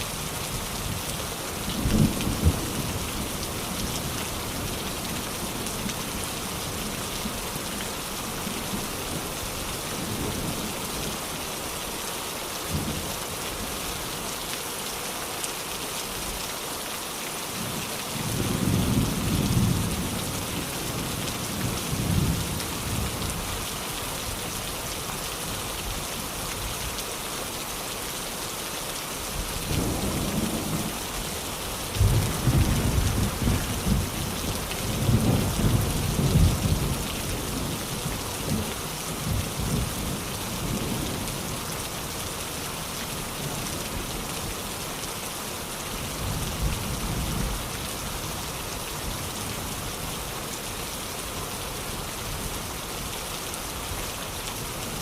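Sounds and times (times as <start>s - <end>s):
heavy rain falling: 0.0s - 55.0s
thunder rumbling: 32.0s - 37.7s.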